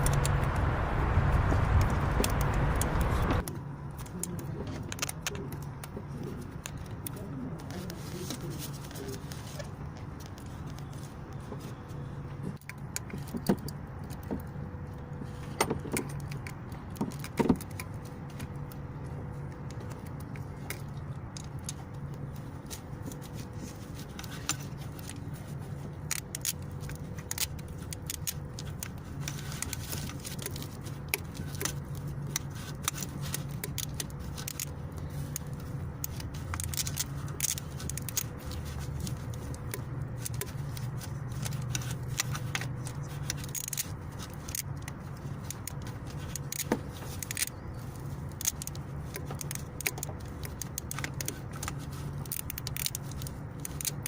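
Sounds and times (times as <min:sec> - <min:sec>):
steady low hum: 0:00.0 - 0:03.8
small metallic clinks and rattles: 0:19.5 - 0:54.0.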